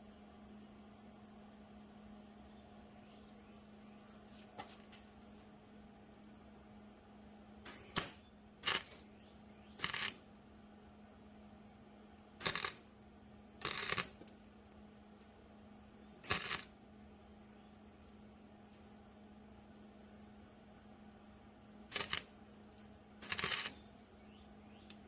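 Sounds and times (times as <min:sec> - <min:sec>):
steady low hum: 0:00.0 - 0:25.0
welding arc crackling: 0:07.6 - 0:09.1, 0:09.7 - 0:10.3, 0:12.4 - 0:12.9, 0:13.6 - 0:14.4, 0:16.2 - 0:16.8, 0:21.8 - 0:22.4, 0:23.2 - 0:24.0.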